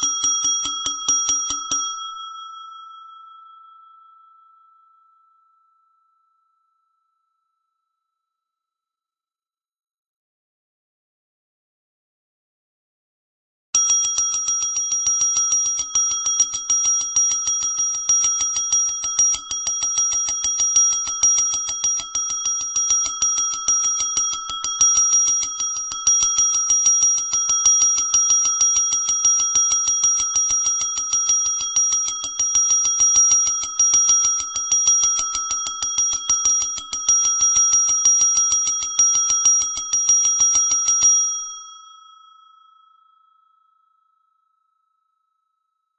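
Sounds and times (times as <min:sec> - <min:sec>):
small bell rung rapidly: 0:00.0 - 0:05.5, 0:13.8 - 0:43.4.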